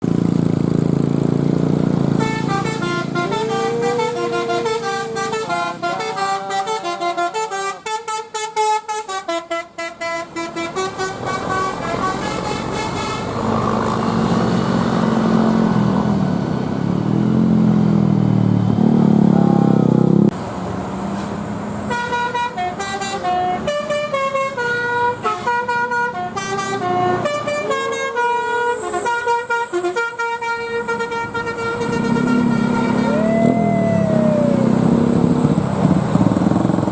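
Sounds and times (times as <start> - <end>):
multi-note musical bus horn: 2.1 - 13.6, 21.9 - 34.6.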